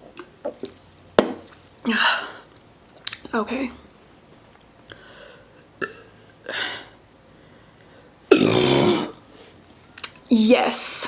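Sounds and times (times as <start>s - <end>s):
woman burping: 8.3s - 9.2s.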